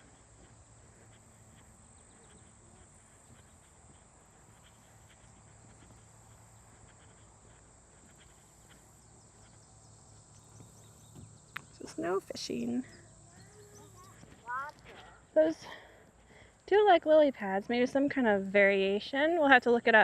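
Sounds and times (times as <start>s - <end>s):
faint ticks: 0.0s - 12.0s.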